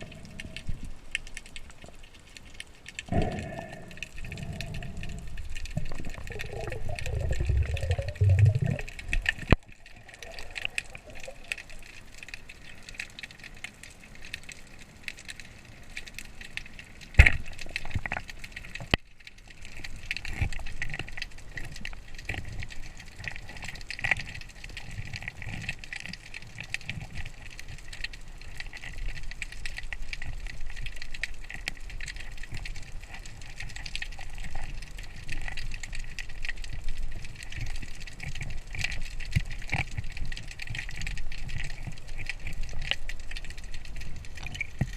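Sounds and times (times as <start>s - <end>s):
underwater crackling hiss: 0.0s - 44.9s
low bubbling gurgle: 3.0s - 12.4s.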